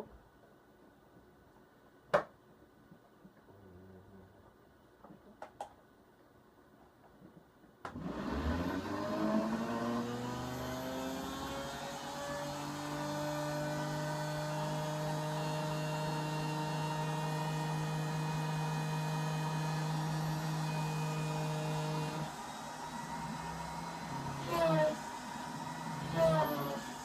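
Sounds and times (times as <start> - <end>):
router spindle whine: 8.0 - 27.0.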